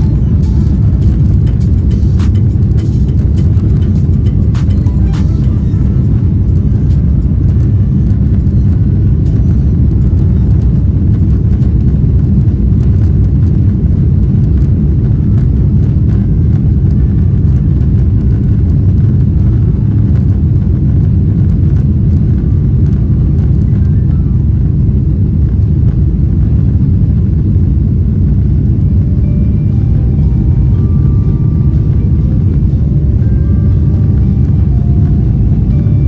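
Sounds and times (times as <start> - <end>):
jet engines and airflow rumble: 0.0 - 36.0.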